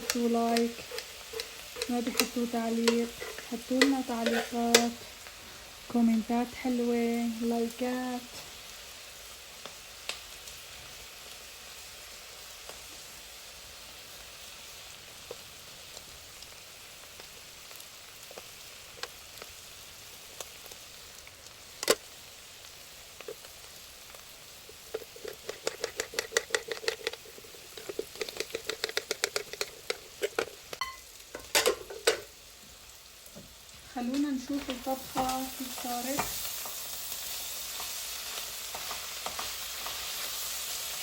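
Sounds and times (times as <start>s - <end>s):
food sizzling in a pan: 0.0s - 41.0s
kitchen knocks and clatter: 25.2s - 32.3s.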